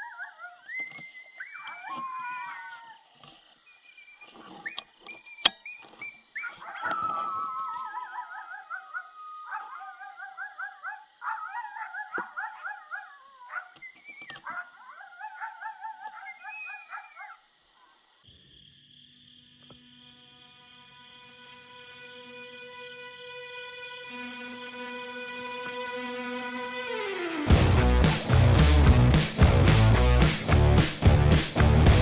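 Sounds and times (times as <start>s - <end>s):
coyotes howling and yipping: 0.0s - 3.1s, 3.7s - 18.1s.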